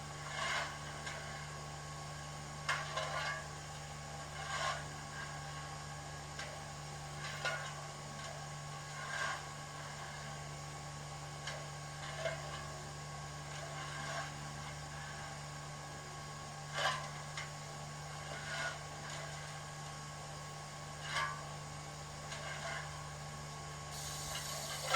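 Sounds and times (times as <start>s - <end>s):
short hisses or clicks: 23.9s - 24.9s
steady low hum: 23.9s - 24.9s.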